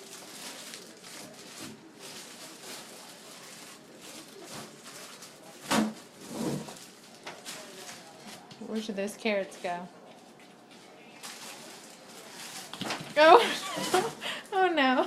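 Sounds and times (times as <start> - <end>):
packaging rustling and knocking: 12.3 - 14.1.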